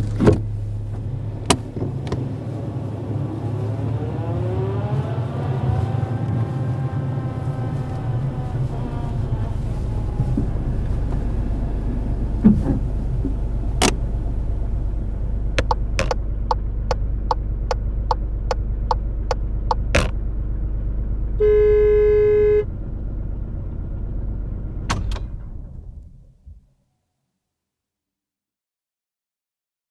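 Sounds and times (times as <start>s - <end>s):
turn signal ticking: 0.0s - 20.2s
car engine idling: 0.0s - 26.4s
sharp clicks: 12.5s - 14.3s, 15.6s - 16.2s, 18.1s - 20.1s
car horn honk: 13.3s - 14.2s, 19.7s - 20.1s, 21.4s - 22.7s.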